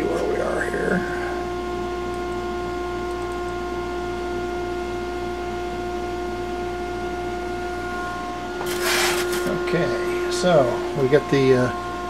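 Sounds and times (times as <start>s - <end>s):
motor whine: 6.3s - 12.0s.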